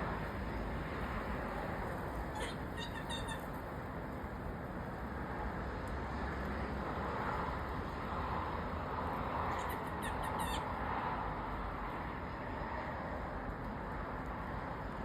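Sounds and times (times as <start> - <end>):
squirrel chirping: 2.3 - 3.6, 9.5 - 10.7.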